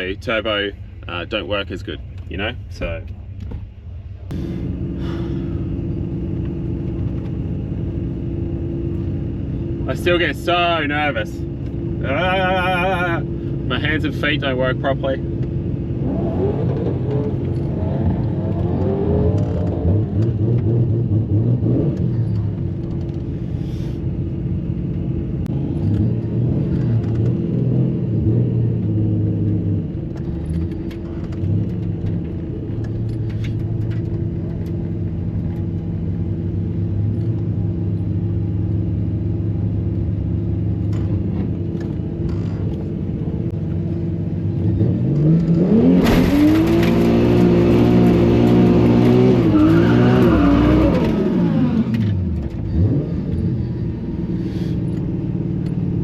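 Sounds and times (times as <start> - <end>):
car engine idling and revving: 0.0 - 56.0.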